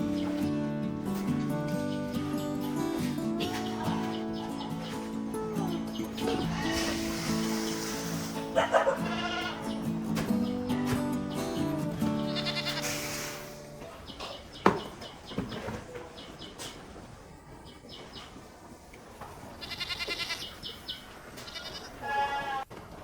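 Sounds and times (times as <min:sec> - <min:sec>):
goats bleating: 0:02.6 - 0:10.0, 0:12.1 - 0:13.7, 0:19.6 - 0:20.5, 0:21.4 - 0:22.7.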